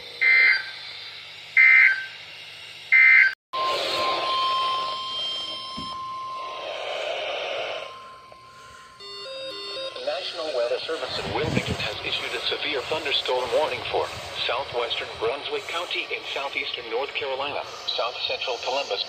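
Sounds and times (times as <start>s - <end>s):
steady radio alert tone: 0.0s - 0.9s, 2.9s - 19.0s
warbling digital data tones: 2.9s - 19.0s
radio hiss: 9.9s - 19.0s.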